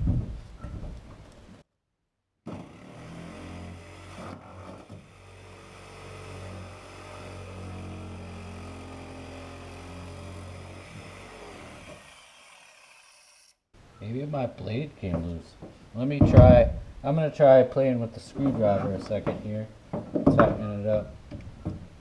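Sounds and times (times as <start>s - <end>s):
jigsaw cutting wood: 2.5s - 13.6s.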